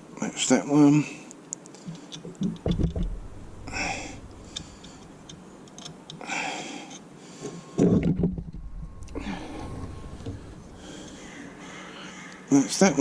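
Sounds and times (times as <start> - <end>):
dull thump: 2.4 - 5.2.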